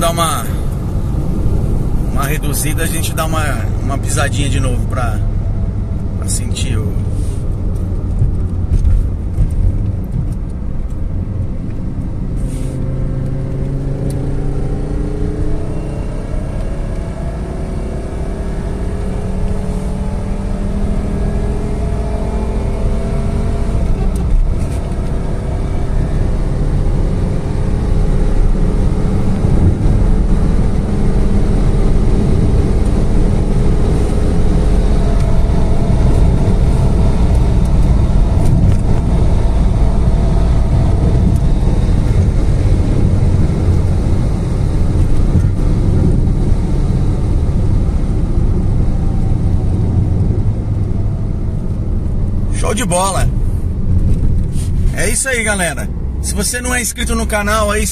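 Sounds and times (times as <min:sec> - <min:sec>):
car engine pulling under throttle: 0:00.0 - 0:57.9.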